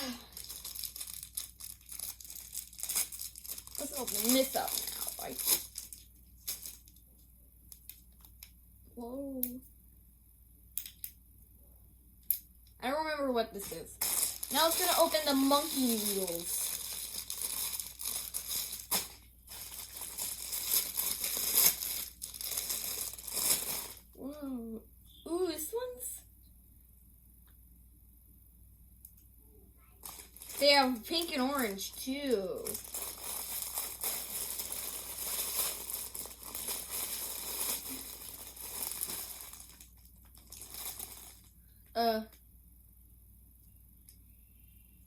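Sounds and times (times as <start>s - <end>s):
plastic packaging crinkling: 0.0s - 7.0s, 13.6s - 24.1s, 30.0s - 41.5s.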